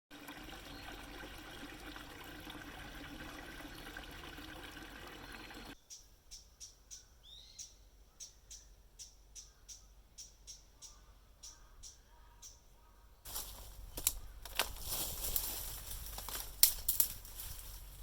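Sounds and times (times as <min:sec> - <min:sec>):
faint outdoor background noise: 0:00.2 - 0:18.0
small bird chirping: 0:05.3 - 0:13.2.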